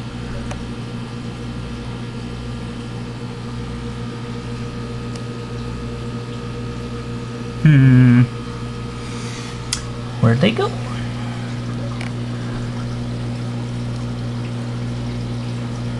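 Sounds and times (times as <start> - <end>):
fish tank equipment hum: 0.0 - 15.9
person humming hmm: 7.6 - 8.4.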